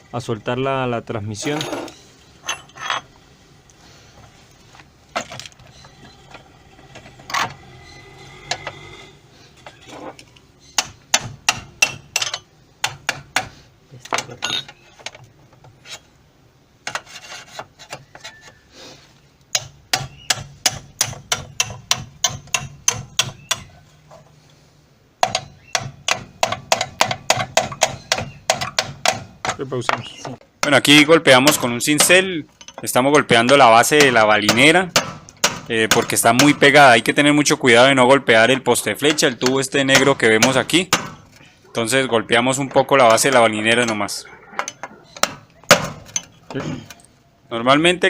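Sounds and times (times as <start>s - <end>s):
hammer striking metal chisel: 10.8s - 13.5s, 19.5s - 23.7s, 25.2s - 32.8s, 33.4s - 36.6s, 39.1s - 41.2s.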